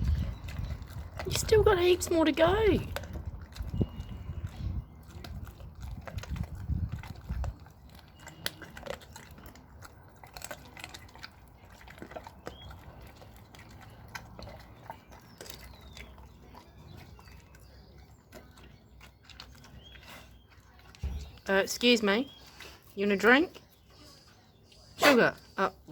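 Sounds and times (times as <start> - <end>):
dog chewing meat and bone: 0.0 - 25.9.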